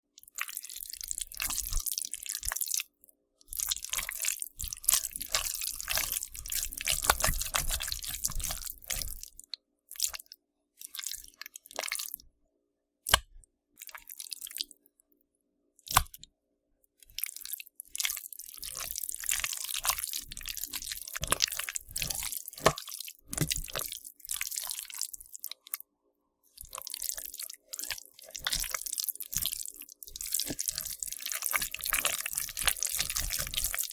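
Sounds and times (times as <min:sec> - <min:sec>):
slime squelching: 0:03.6 - 0:12.2, 0:15.9 - 0:16.2, 0:17.1 - 0:25.8, 0:26.5 - 0:33.9.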